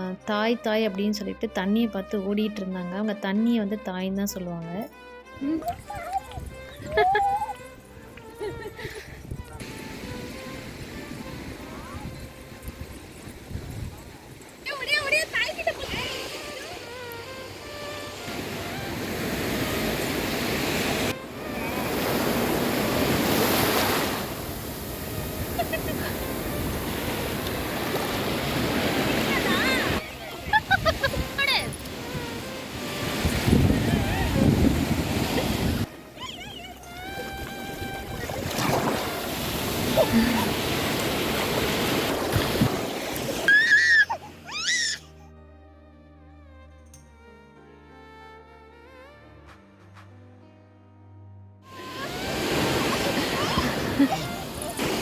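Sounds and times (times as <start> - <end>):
soft background music: 0.0 - 40.4, 43.6 - 55.0
child squealing: 5.8 - 7.6, 36.2 - 37.3, 43.4 - 45.3, 51.8 - 54.8
wind buffeting microphone: 8.0 - 14.7, 24.3 - 35.9, 37.4 - 43.4
surf rushing on a beach: 9.6 - 44.4, 51.7 - 55.0.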